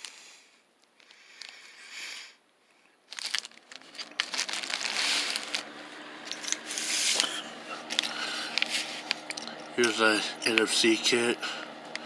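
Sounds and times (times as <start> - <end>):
plastic packaging crinkling: 3.1 - 10.7.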